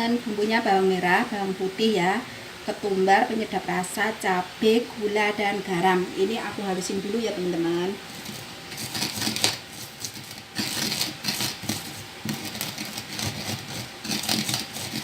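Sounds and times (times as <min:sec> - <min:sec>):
pestle pounding in a mortar: 0:08.2 - 0:15.0.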